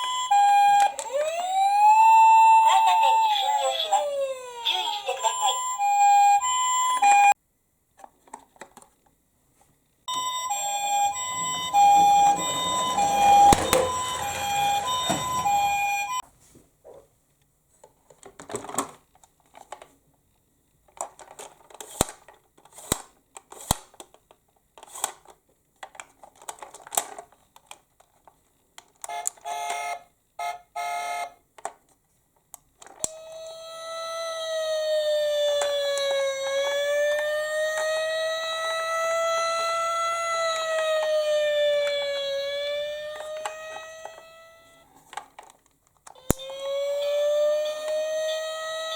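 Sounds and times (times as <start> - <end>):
toy two-tone siren: 0.0 - 7.4, 10.1 - 16.2, 29.0 - 31.4, 33.0 - 45.0, 46.2 - 48.9
wailing siren falling in pitch: 0.3 - 3.2, 10.1 - 16.2, 33.2 - 44.9, 46.3 - 48.9.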